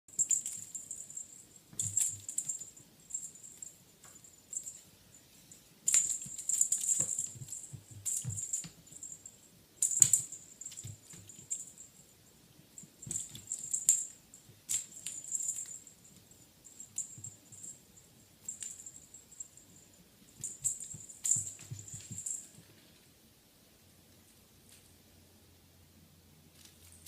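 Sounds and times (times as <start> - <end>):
kitten clicking and skittering: 5.9 - 9.2, 9.8 - 11.8, 20.3 - 22.7.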